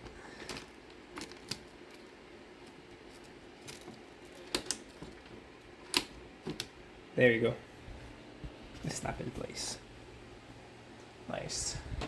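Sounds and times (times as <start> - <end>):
ram sticks clicking into slots: 3.1 - 6.8.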